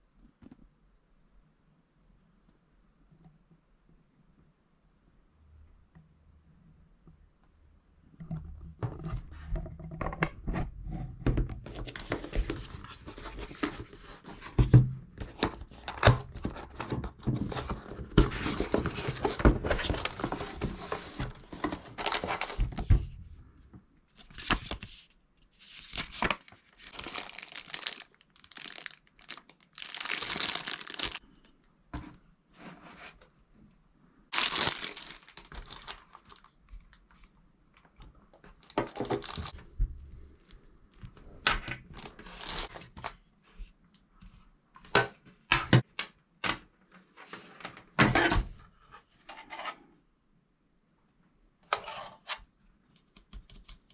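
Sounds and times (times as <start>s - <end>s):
packaging crinkling and tearing: 25.8s - 31.2s, 34.3s - 36.6s, 38.5s - 39.6s, 41.9s - 42.7s.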